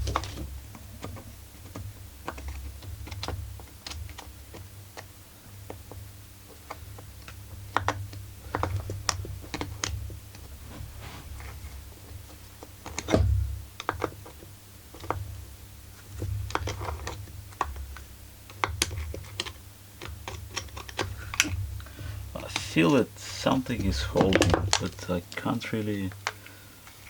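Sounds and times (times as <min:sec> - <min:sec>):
heavy thump: 0:10.6 - 0:11.6.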